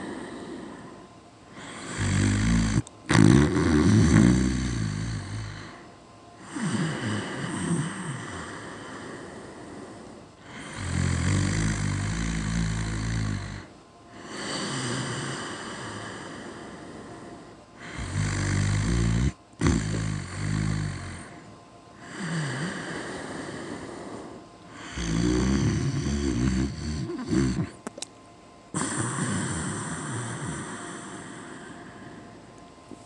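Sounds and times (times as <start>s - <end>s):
breathy breathing: 0.0s - 2.2s, 5.4s - 11.1s, 13.6s - 18.2s, 21.1s - 25.2s, 28.8s - 32.5s
low rattling snore: 1.6s - 5.7s, 10.5s - 13.7s, 17.8s - 21.4s, 24.8s - 27.8s, 28.8s - 31.2s.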